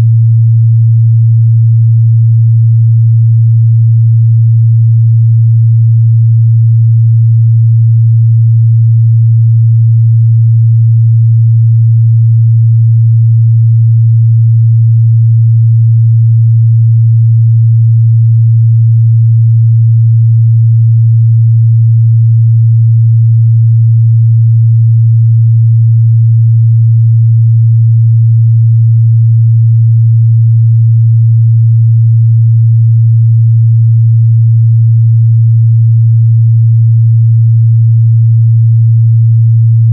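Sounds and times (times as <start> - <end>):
low sine-wave test tone: 0.0 - 39.9.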